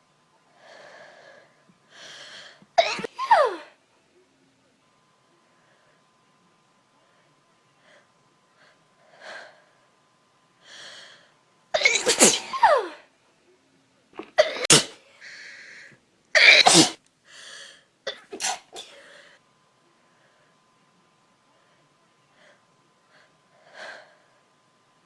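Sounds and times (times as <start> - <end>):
woman sneezing: 11.8 - 13.0.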